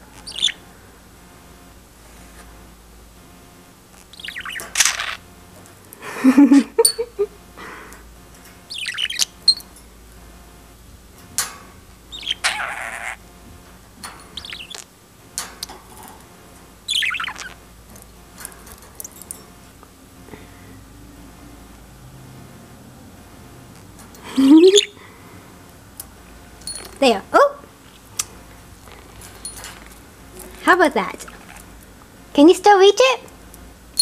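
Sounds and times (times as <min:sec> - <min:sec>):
budgerigar chirping: 0:00.2 - 0:00.6, 0:04.1 - 0:05.2, 0:08.7 - 0:09.6, 0:12.1 - 0:13.2, 0:14.4 - 0:14.9, 0:16.9 - 0:17.6, 0:24.7 - 0:25.0.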